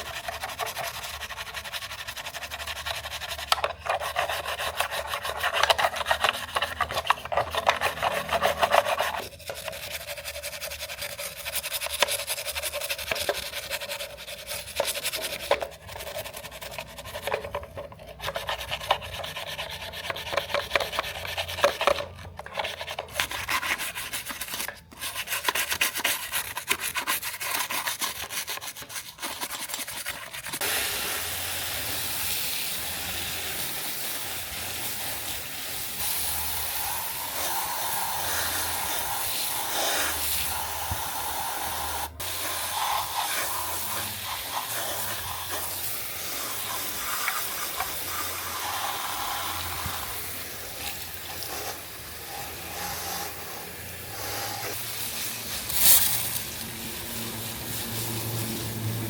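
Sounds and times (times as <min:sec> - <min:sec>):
fast rubbing strokes: 0:00.0 - 0:30.6.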